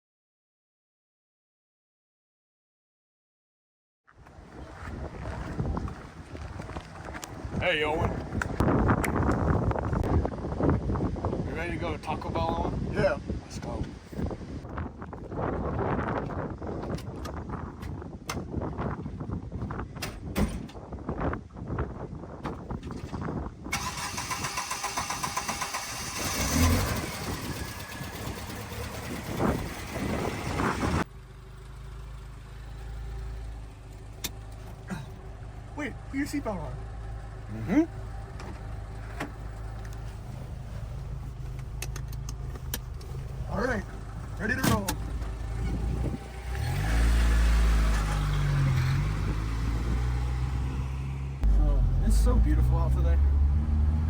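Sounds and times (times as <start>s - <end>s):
car engine cranking: 23.7s - 31.0s, 38.0s - 54.0s
car engine idling: 23.8s - 46.8s, 51.4s - 54.0s.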